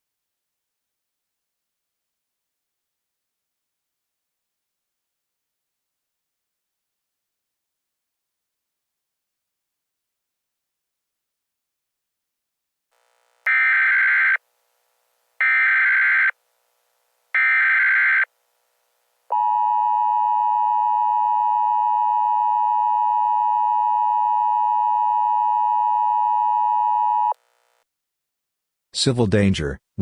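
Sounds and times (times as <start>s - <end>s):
digital data screech bursts: 13.5s - 14.4s
two-tone attention signal: 13.5s - 14.4s.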